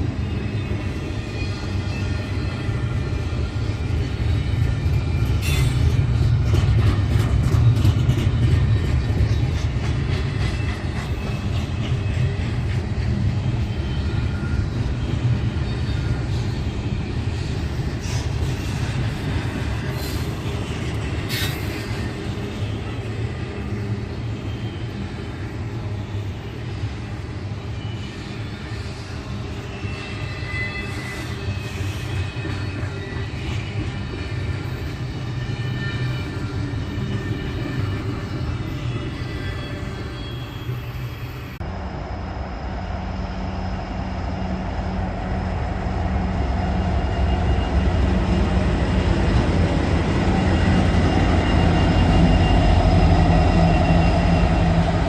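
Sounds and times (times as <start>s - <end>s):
train rumbling past: 0.0s - 55.0s
faint thin squeal: 0.3s - 6.0s, 26.1s - 41.6s.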